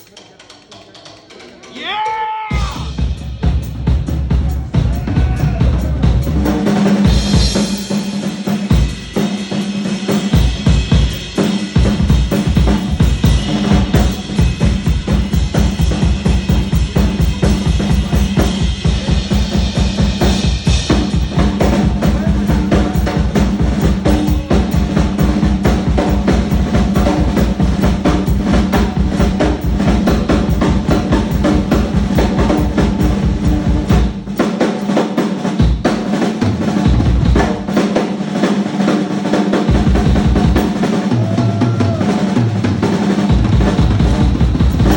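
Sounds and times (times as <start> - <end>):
bass drum strokes: 2.6 - 34.4
cymbal wash: 5.7 - 38.9.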